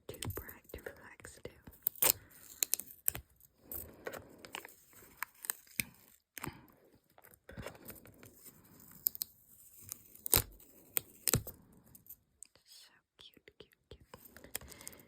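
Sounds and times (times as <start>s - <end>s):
stickers peeling and crackling: 1.8s - 3.2s, 8.8s - 11.5s.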